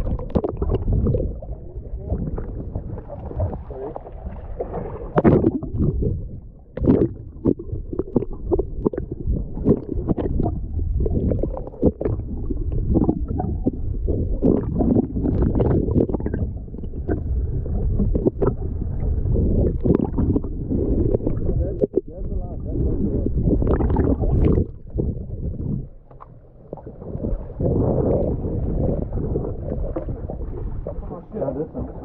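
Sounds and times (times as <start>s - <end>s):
muffled sloshing water: 0.0s - 32.0s
knocks and splashes: 2.0s - 6.2s.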